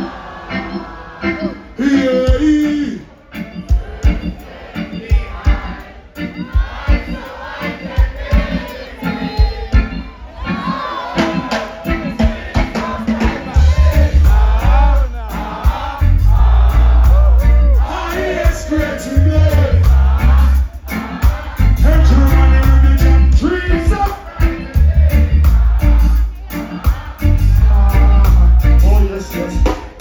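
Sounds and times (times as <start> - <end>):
person singing: 0.0 - 3.1
live reggae band playing: 0.0 - 30.0
deep bass line: 13.5 - 20.7, 21.6 - 26.4, 27.0 - 29.8.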